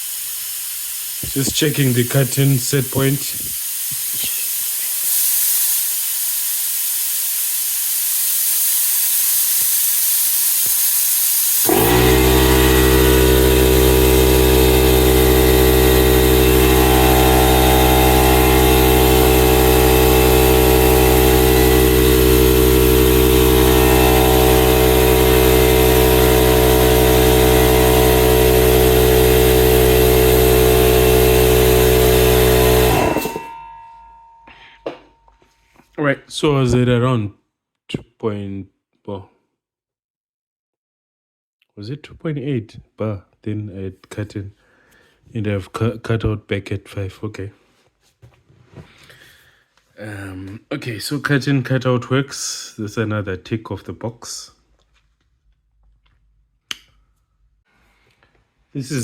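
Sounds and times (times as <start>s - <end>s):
compressed air hissing: 0.0s - 33.5s
air compressor motor running: 0.0s - 35.0s.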